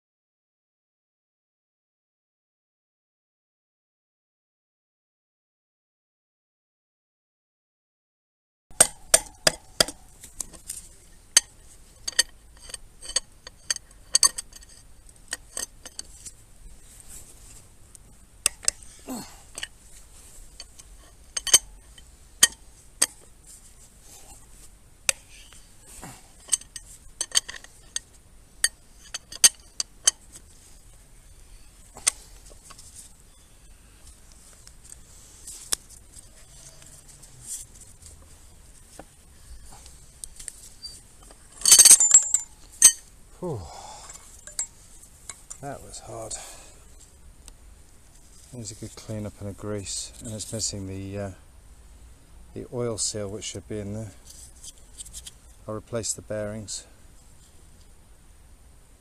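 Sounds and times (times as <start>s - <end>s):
metal tools clinking together: 26.4s - 28.0s, 40.8s - 43.0s, 44.4s - 44.7s.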